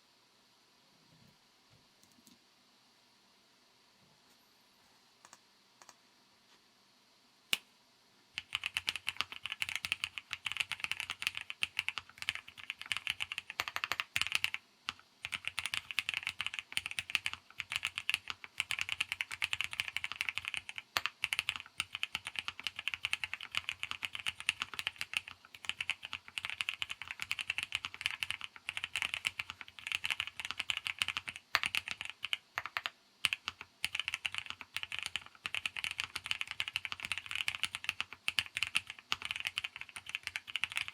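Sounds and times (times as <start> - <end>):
mechanical keyboard typing: 8.4 - 40.9.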